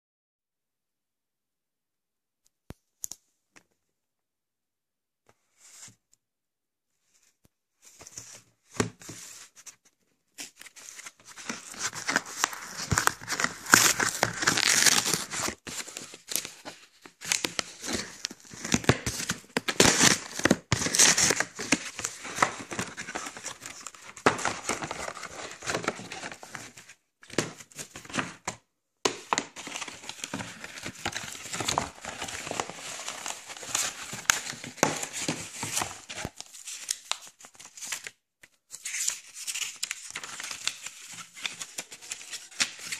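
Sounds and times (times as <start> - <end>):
plastic shrink-wrap crinkling and tearing: 11.4 - 15.6.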